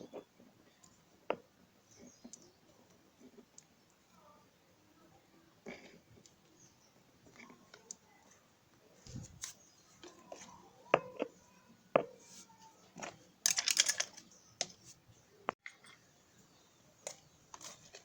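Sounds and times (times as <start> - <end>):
small hard parts clicking: 13.0 - 14.7.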